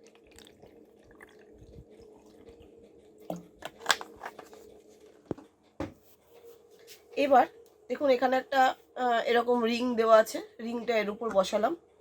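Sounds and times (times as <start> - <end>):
water trickling into container: 0.0 - 3.8.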